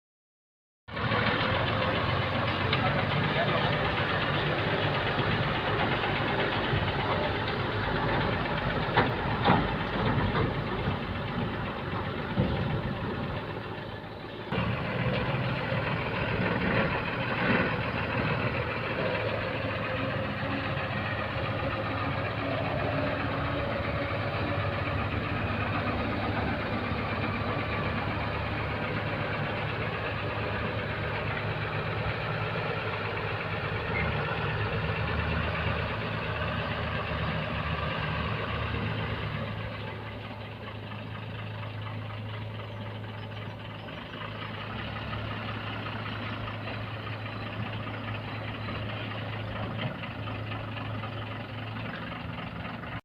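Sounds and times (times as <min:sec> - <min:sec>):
diesel engine running: 0:00.9 - 0:53.0.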